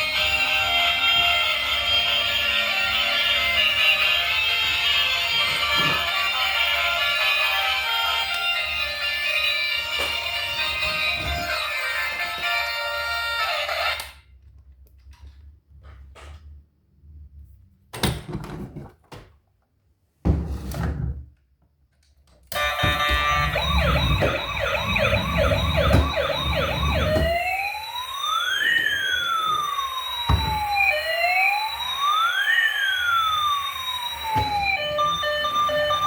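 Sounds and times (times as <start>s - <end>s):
toy electronic siren: 0.0s - 14.2s, 22.5s - 36.0s.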